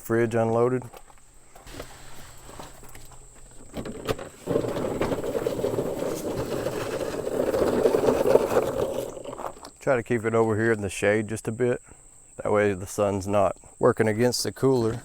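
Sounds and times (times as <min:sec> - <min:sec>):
fridge scraping and rustling: 0:01.6 - 0:09.8.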